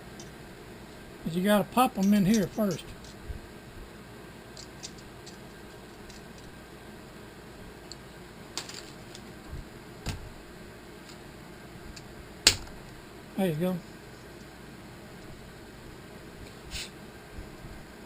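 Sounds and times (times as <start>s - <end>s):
metal parts clicking and tapping: 1.8s - 3.2s, 4.6s - 6.5s.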